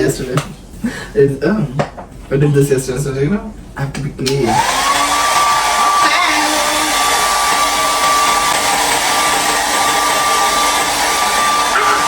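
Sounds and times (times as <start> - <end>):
hair dryer running: 4.4 - 12.0.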